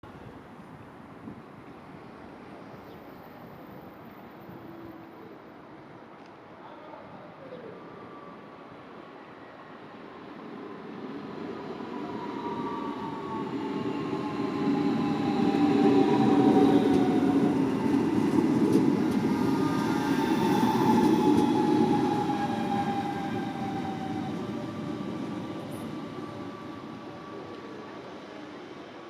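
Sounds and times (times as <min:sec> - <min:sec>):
train wheels rumbling on rail: 0:11.6 - 0:29.0.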